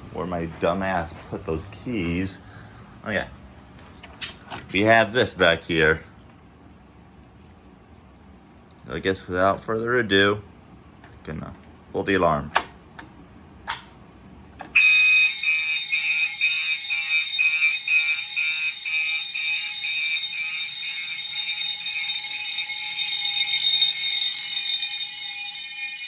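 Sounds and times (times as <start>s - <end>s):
pull station click: 12.5s - 14.0s
fire alarm horns: 14.6s - 26.0s.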